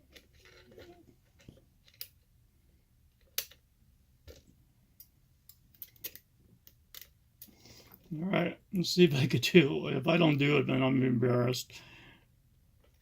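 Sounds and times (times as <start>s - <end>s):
small metallic clicks: 5.0s - 7.6s.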